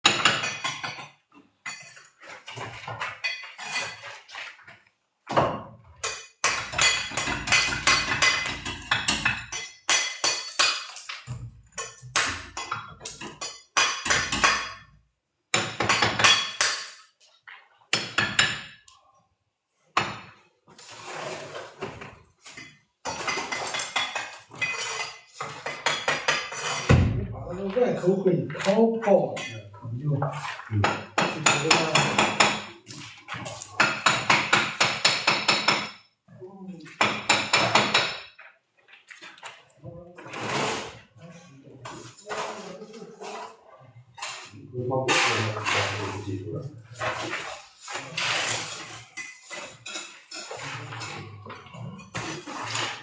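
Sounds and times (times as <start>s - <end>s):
hard objects clattering and clinking: 0.0s - 17.3s, 20.0s - 36.0s, 44.2s - 53.0s.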